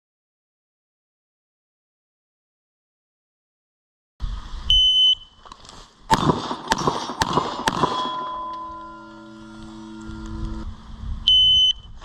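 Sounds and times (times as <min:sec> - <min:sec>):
gunshots: 0:06.1 - 0:09.6
steel targets ringing: 0:06.2 - 0:10.8
shot timer beep: 0:07.6 - 0:10.7, 0:11.3 - 0:11.9.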